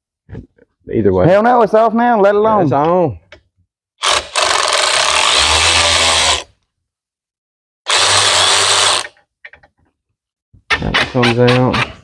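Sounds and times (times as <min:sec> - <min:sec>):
handheld power tool running: 0:04.0 - 0:06.6, 0:07.9 - 0:09.2.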